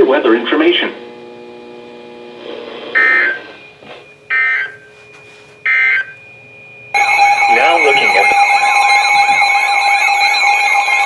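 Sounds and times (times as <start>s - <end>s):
faint electronic hum: 0.0s - 9.0s
data tone bursts: 2.9s - 5.0s, 5.6s - 6.2s, 7.0s - 11.0s.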